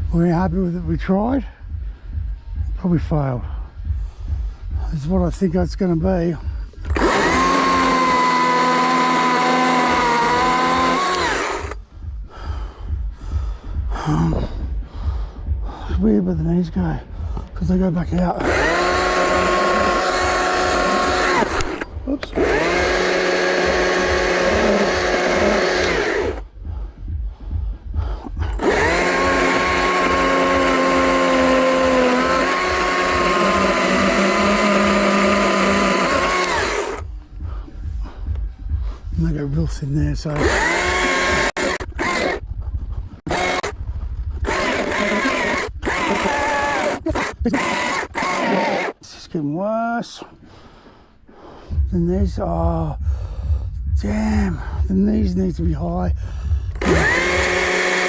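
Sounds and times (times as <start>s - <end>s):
low pulsing: 0.0s - 48.9s, 51.6s - 58.0s
chainsaw running at full throttle: 6.8s - 11.8s, 18.2s - 26.4s, 28.4s - 37.1s, 40.3s - 42.4s, 43.2s - 43.8s, 44.4s - 49.0s, 56.7s - 58.0s.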